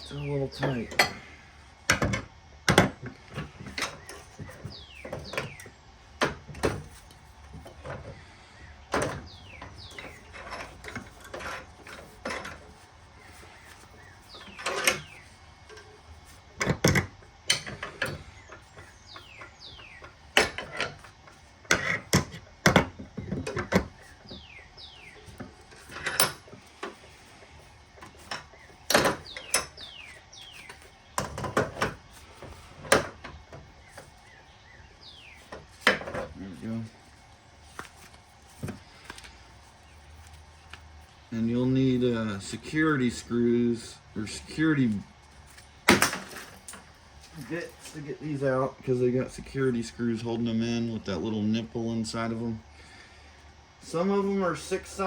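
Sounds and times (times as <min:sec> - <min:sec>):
metal clanks and knocks: 0:08.9 - 0:12.8, 0:16.6 - 0:24.4, 0:25.2 - 0:27.1, 0:28.0 - 0:30.0, 0:30.6 - 0:34.0, 0:35.5 - 0:36.4.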